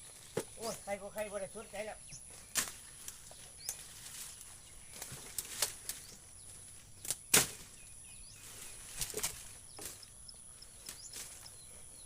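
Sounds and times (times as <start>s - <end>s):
branches cracking and breaking: 2.3s - 10.0s, 10.8s - 11.4s.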